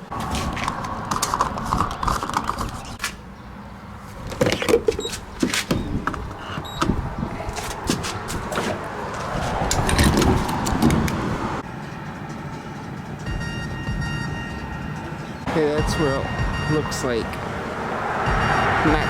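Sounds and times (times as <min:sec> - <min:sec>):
handling clicks knocks and rattles: 0:00.0 - 0:03.2, 0:04.1 - 0:11.4.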